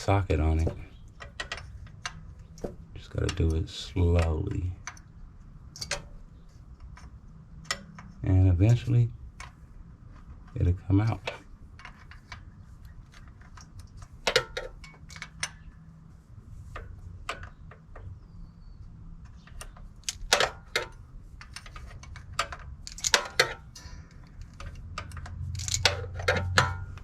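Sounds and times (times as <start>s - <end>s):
wrench clinking on bolt: 19.5s - 27.0s.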